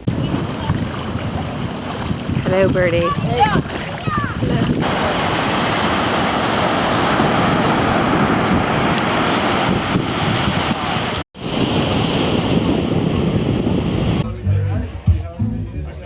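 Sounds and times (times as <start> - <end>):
ocean surf washing onto beach: 0.0 - 14.2
wind buffeting microphone: 0.0 - 14.4.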